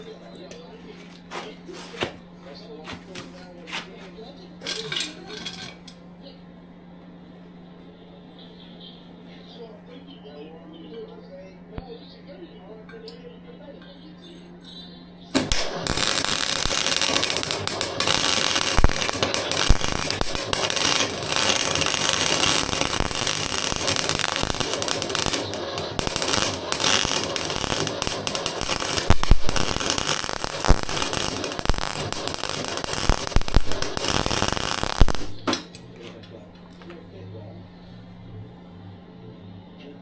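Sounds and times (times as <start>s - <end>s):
arc welder crackling: 4.6s - 5.9s, 15.3s - 35.8s.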